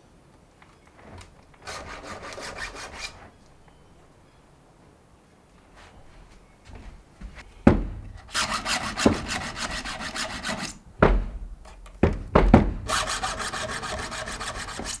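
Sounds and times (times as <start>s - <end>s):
heavy knocks: 7.2s - 15.0s
file rasping on chainsaw chain: 8.3s - 10.8s, 12.9s - 15.0s.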